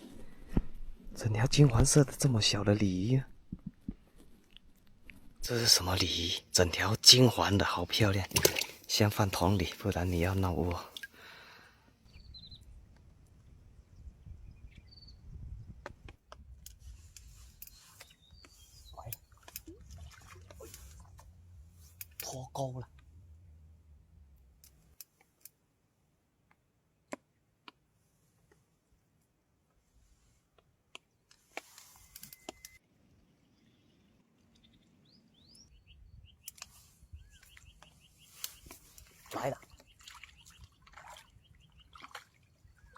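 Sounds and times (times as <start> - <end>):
bird chirping: 12.1 - 12.8, 13.8 - 15.7, 17.6 - 19.8, 32.3 - 42.9
wind rumbling on microphone: 12.1 - 17.7, 35.7 - 39.0
brief rustle: 16.7 - 19.7, 31.3 - 32.8, 36.5 - 39.3.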